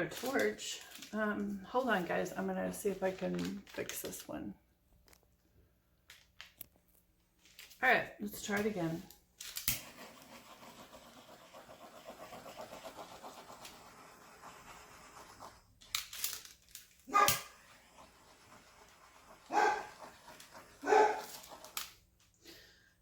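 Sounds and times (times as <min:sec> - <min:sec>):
dog barking: 0:17.1 - 0:17.5, 0:19.5 - 0:19.9, 0:20.8 - 0:21.3.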